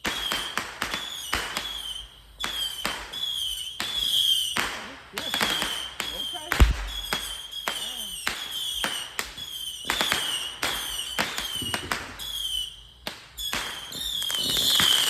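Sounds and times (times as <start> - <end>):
falling firework whistles: 0.0 - 15.0
firework bangs: 2.5 - 12.7.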